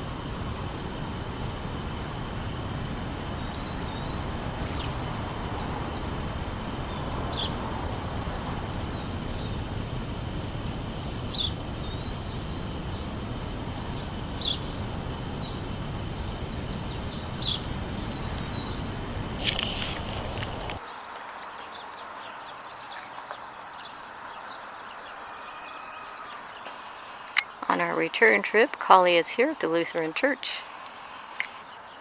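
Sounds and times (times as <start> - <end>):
steady background hum: 0.0 - 20.8
songbirds chirping: 0.0 - 32.0.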